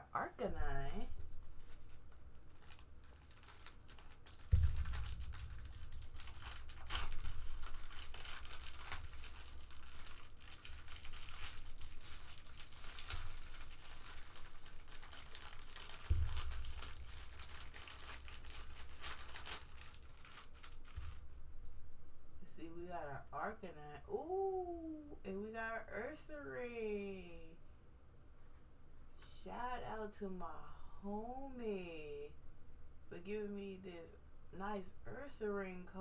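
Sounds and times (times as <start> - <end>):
plastic packaging crinkling: 0.6 - 21.7
low bump: 4.5 - 8.0.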